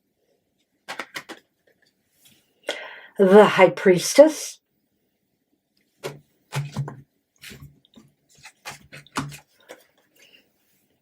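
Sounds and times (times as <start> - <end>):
cards tapping and sliding: 0.9 - 1.4, 8.3 - 9.9.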